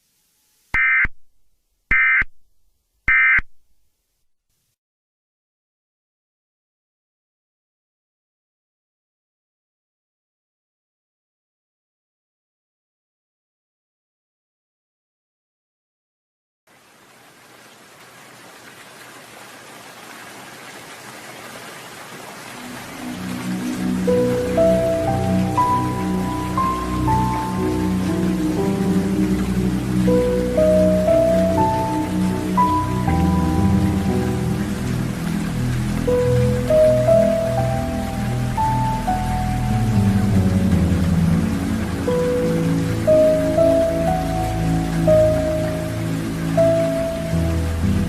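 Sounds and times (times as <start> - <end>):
steady rain: 16.7 - 48.0
music with held notes: 23.0 - 48.0.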